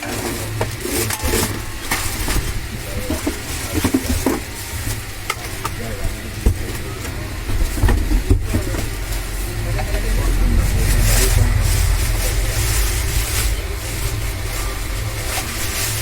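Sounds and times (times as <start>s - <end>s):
table fan airflow buffeting microphone: 0.0s - 16.0s.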